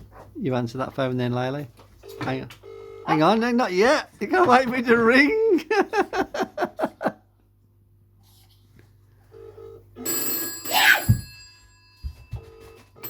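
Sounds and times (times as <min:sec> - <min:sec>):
telephone ring-back burr: 0:02.0 - 0:03.3, 0:09.3 - 0:13.0
telephone ringing high tones: 0:02.0 - 0:03.3, 0:09.3 - 0:13.0.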